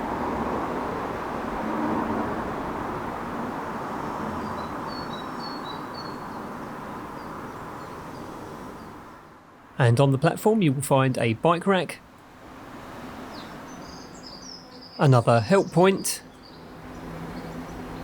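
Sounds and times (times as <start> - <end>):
road traffic noise: 0.0 - 18.0
bird chirps: 4.5 - 6.4, 13.3 - 18.0.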